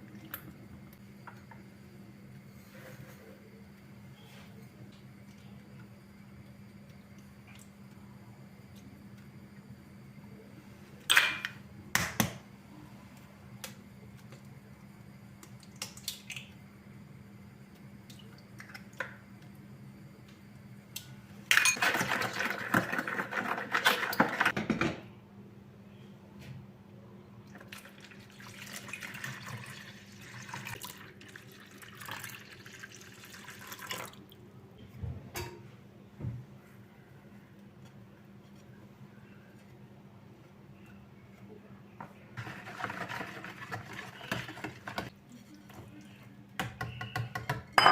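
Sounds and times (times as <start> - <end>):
faint steady hum: 0.0 - 47.9
washing and handling sounds: 37.4 - 46.4.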